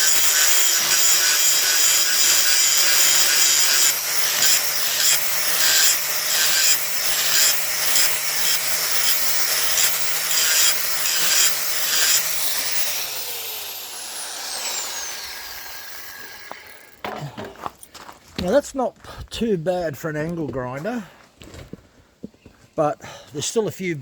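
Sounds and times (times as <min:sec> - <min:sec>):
grinder spinning down: 0:00.0 - 0:17.0
angle grinder grinding steel: 0:00.0 - 0:17.2.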